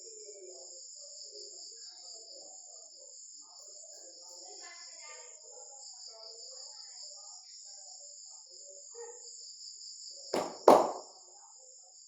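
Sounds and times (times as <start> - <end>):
sharp loud knock: 10.4 - 11.0.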